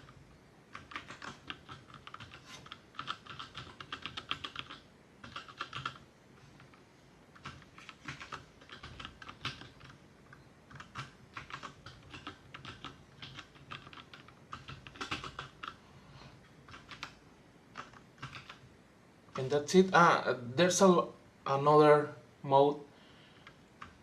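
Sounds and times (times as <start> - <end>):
mechanical keyboard clacking: 0.7 - 6.0, 7.4 - 15.8, 16.7 - 17.2, 17.8 - 18.6.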